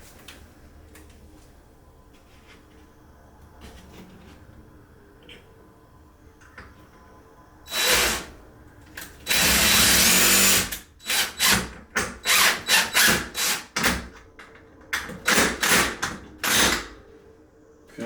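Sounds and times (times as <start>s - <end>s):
power drill driving screw into wood: 7.7s - 8.3s, 9.3s - 13.9s, 15.2s - 16.9s.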